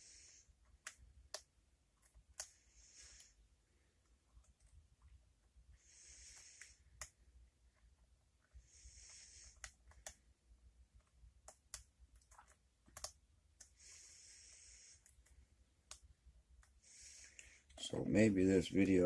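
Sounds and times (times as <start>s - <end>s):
soft hissing: 0.0s - 1.0s, 2.4s - 4.0s, 5.7s - 7.3s, 8.4s - 10.3s, 13.0s - 19.0s.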